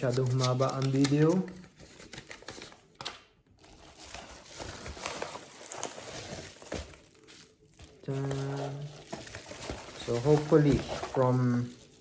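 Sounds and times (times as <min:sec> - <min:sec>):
packaging rustling and crinkling: 0:00.0 - 0:12.0.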